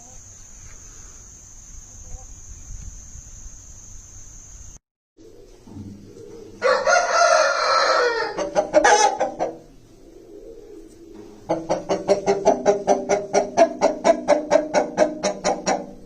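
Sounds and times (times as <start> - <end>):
rooster crowing: 6.6 - 9.5.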